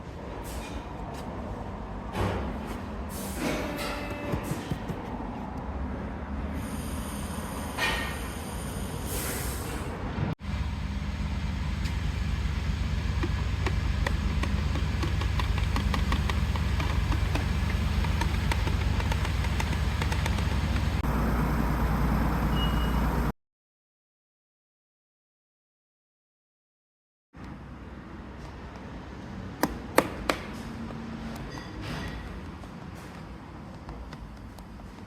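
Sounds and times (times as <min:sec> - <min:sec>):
engine low drone: 0:10.4 - 0:23.3.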